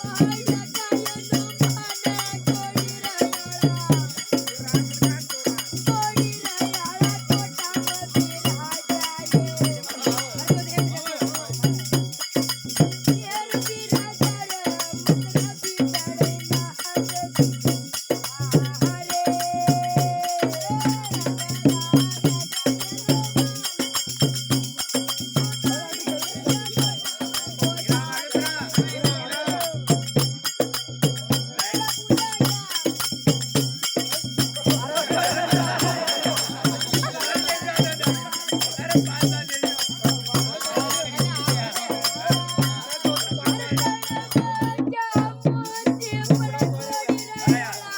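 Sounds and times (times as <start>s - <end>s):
jingling rattle: 0.0s - 44.7s, 45.3s - 47.9s
evenly beaten percussion: 0.0s - 47.9s
person singing wavering melody: 31.4s - 47.9s.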